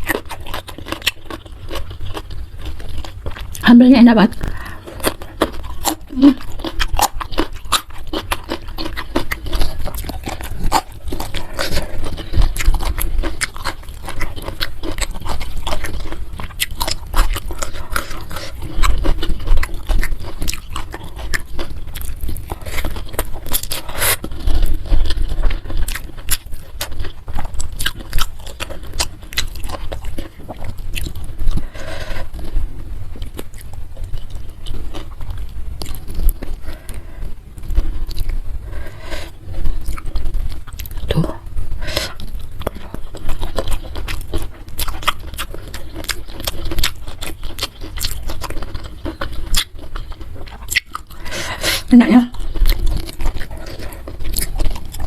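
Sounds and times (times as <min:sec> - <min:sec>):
chewing and crunching food: 0:00.0 - 0:55.0.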